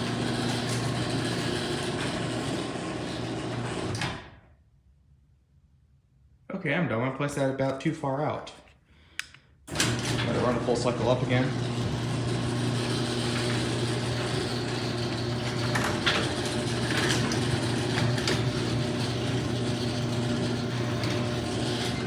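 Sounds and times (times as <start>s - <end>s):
garage door clanking and rattling: 0.0s - 4.4s, 9.7s - 22.0s
garage door opener motor hum: 0.0s - 4.4s, 9.7s - 22.0s.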